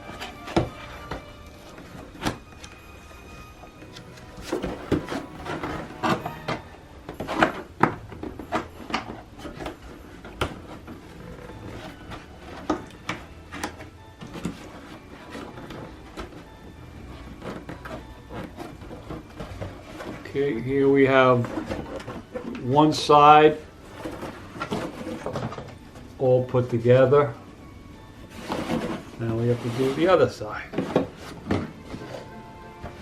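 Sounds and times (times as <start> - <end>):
cardboard scraping and tapping: 4.0 - 6.6.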